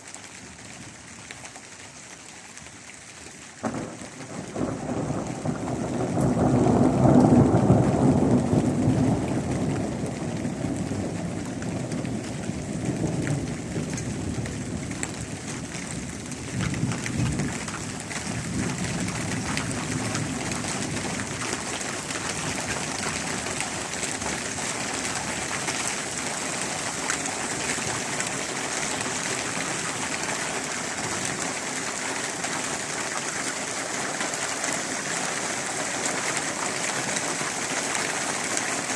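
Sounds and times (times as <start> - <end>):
heavy rain falling: 0.0 - 38.9
rolling thunder: 3.6 - 24.5.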